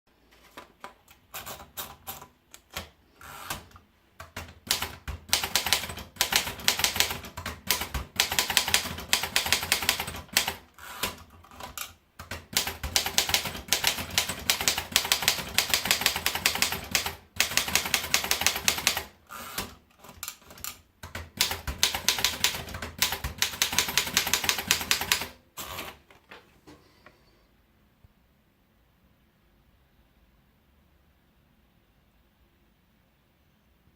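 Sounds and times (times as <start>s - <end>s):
manual typewriter typing: 1.3s - 26.0s.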